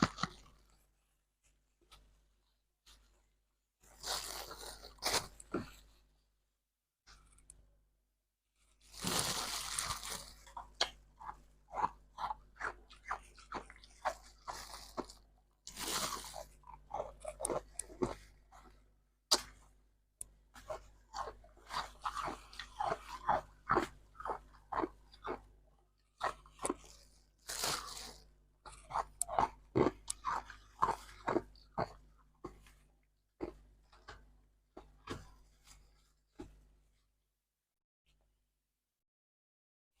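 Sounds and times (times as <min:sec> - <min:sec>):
ice being bitten and chewed: 0:00.0 - 0:00.7, 0:08.8 - 0:35.8.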